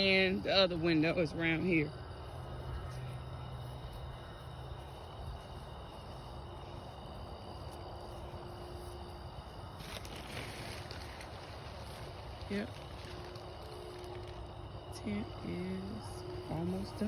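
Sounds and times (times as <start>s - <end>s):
crickets chirring: 0.0s - 17.0s
low background rumble: 0.0s - 17.0s
rustle: 9.7s - 15.1s.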